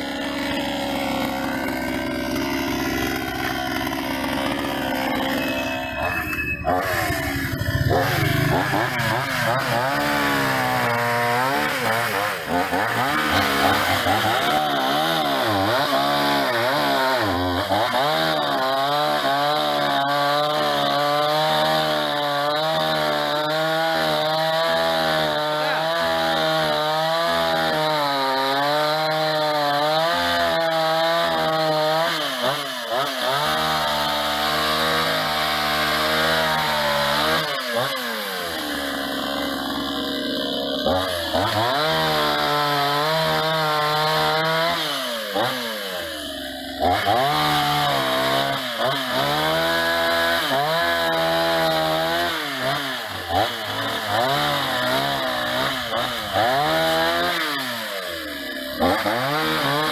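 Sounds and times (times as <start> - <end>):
chainsaw engine revving: 0.0 - 59.9.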